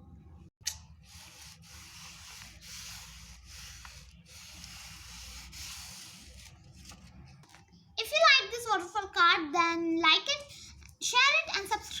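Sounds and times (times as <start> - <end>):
paper rubbing against paper: 1.0 - 7.2.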